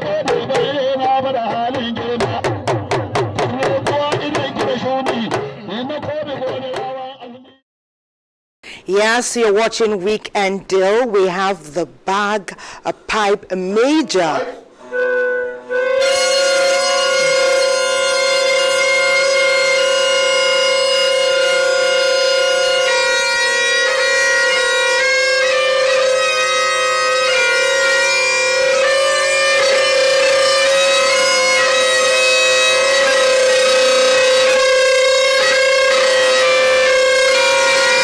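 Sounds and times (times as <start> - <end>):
bagpipe drone: 14.3 - 38.0
bagpipe chanter melody: 14.4 - 38.0.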